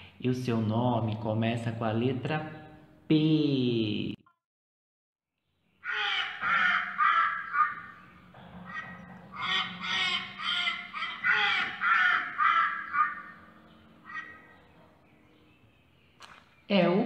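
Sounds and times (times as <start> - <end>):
ducks quacking: 5.8 - 14.8.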